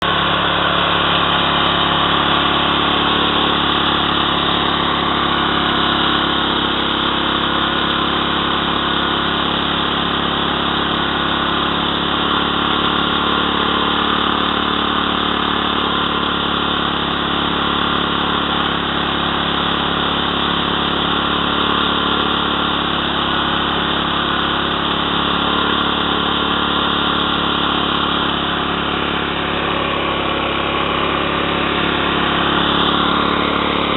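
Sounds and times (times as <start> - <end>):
rice thresher engine running: 0.0 - 33.9.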